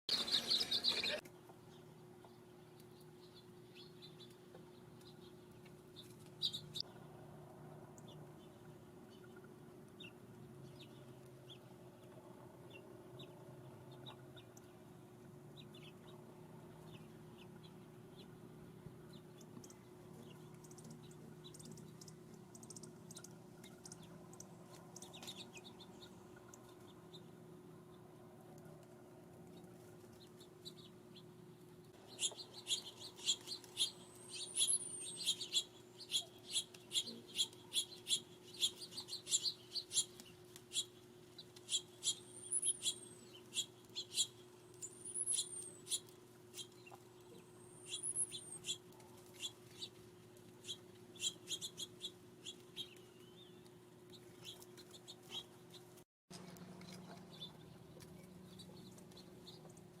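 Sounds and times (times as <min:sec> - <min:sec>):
songbirds chip notes: 0:07.9 - 0:28.1, 0:31.9 - 0:50.0, 0:50.6 - 0:55.9.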